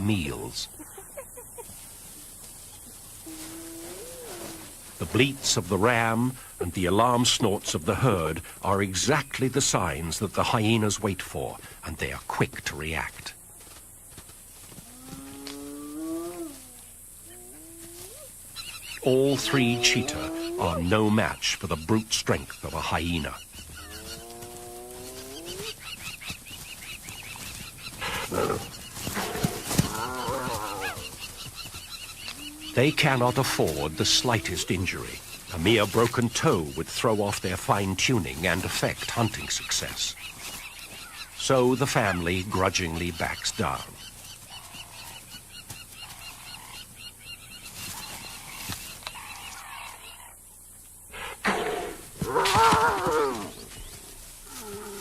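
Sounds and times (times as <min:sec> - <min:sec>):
wavering animal call: 0:03.2 - 0:04.8, 0:19.3 - 0:20.8, 0:32.3 - 0:34.9, 0:54.5 - 0:55.0
longer lower animal calls: 0:03.2 - 0:04.9, 0:14.8 - 0:21.0, 0:23.6 - 0:25.8, 0:27.9 - 0:35.5, 0:51.1 - 0:55.0
harsh animal snarl: 0:51.1 - 0:53.3.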